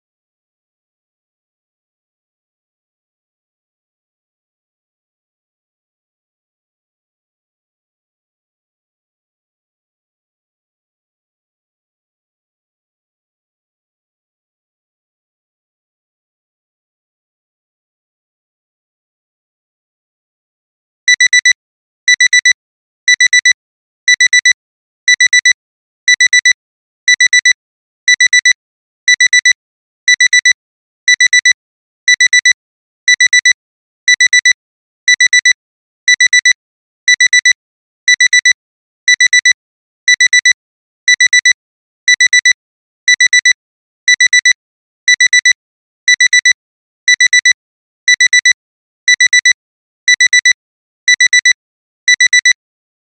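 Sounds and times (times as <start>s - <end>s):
alarm clock beeping: 21.1s - 21.5s, 22.1s - 22.5s, 23.1s - 23.5s, 24.1s - 27.5s, 28.1s - 28.5s, 29.1s - 35.5s, 36.1s - 43.5s, 44.1s - 52.6s.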